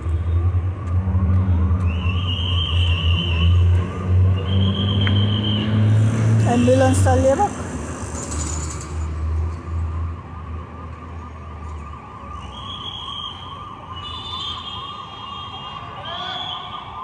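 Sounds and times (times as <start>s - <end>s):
low traffic rumble: 0.0s - 17.0s
ambulance siren yelping: 9.7s - 17.0s.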